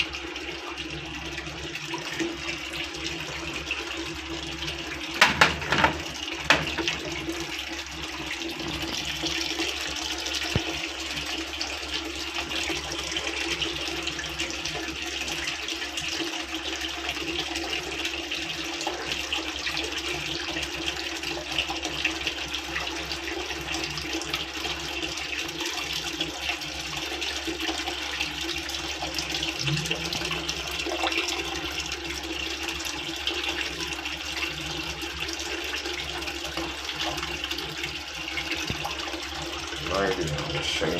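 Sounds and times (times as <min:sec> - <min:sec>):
water running into washing machine: 0:00.0 - 0:40.9
knocks: 0:05.2 - 0:07.1.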